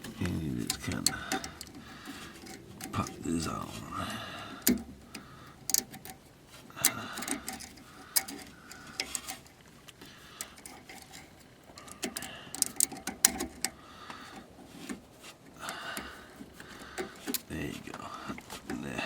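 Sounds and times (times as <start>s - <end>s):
sharp metal clicks and taps: 0.0s - 3.2s, 4.6s - 14.5s, 15.7s - 17.5s.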